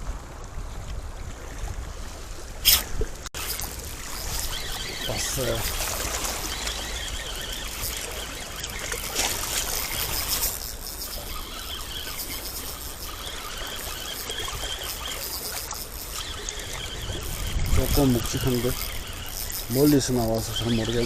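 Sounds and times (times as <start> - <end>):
fishing reel gear whine: 2.6 - 21.0
water washing: 3.4 - 21.0.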